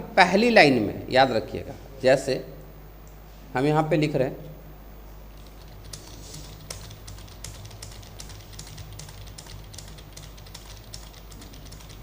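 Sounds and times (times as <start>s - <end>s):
steady low hum: 0.0s - 12.0s
typing on a computer keyboard: 5.4s - 12.0s.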